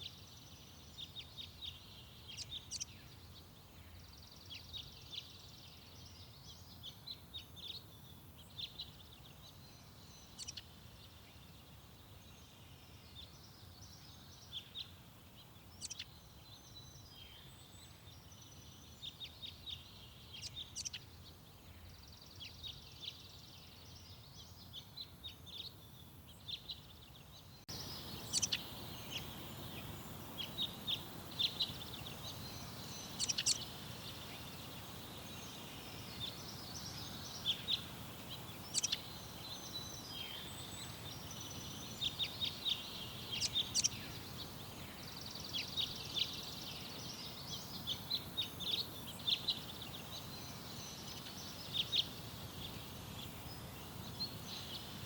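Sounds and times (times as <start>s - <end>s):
outdoor background hiss: 0.0s - 55.0s
songbirds chirping and singing: 0.0s - 55.0s.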